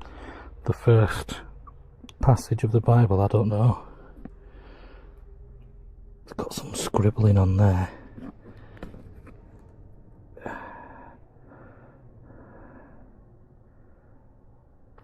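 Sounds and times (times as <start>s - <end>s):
man breathing out heavily: 10.4s - 13.3s.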